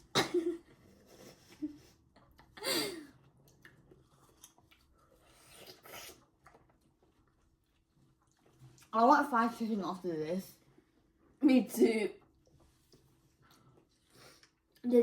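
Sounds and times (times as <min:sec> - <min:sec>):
children chewing and breathing: 0:00.6 - 0:08.9, 0:12.4 - 0:14.8.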